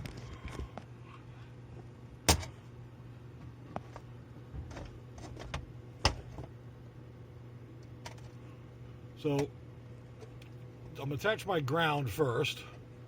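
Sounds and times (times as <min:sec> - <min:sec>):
clicks and knocks of handling wires: 0:00.0 - 0:00.9, 0:03.4 - 0:06.6, 0:07.7 - 0:08.4.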